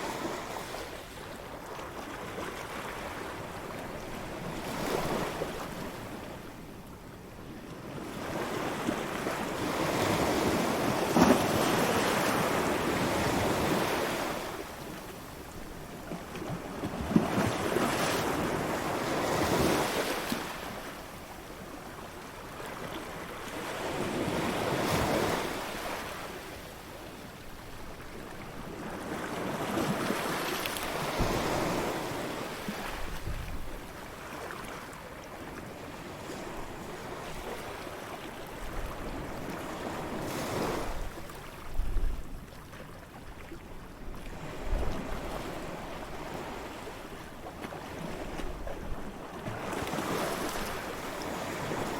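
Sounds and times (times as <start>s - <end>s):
wind gusts on microphone: 30.9s - 33.9s.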